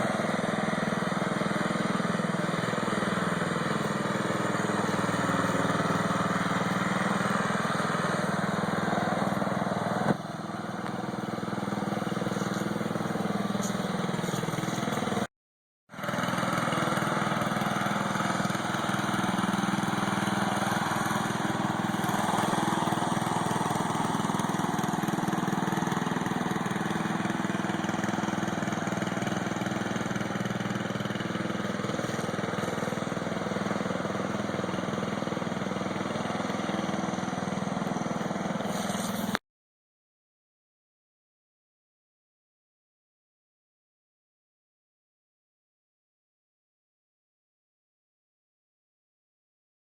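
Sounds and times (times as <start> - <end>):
small lawn-mower engine running: 0.0 - 15.3, 15.9 - 39.4.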